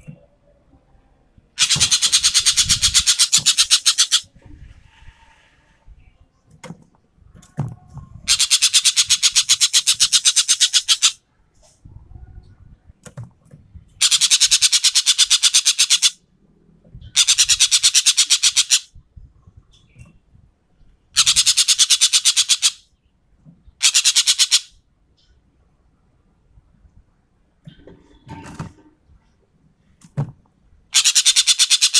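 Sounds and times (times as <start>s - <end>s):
bird rattling call: 1.6s - 4.3s, 8.3s - 11.2s, 14.0s - 16.2s, 17.2s - 18.9s, 21.2s - 22.8s, 23.8s - 24.7s, 30.9s - 31.9s.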